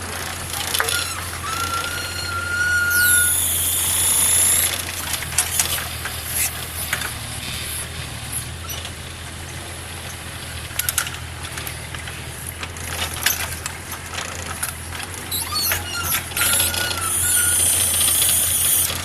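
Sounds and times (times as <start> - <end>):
excavator engine running: 0.0 - 19.0
shrill metallic squeal: 0.6 - 4.8, 15.2 - 19.0
high whistling tone: 0.8 - 4.7, 15.4 - 18.9.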